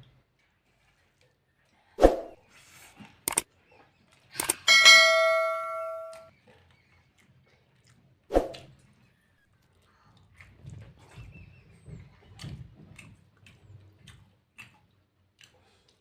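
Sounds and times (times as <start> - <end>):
metal dishware clinking: 4.6 - 6.3
ringing metal clang: 4.6 - 6.3.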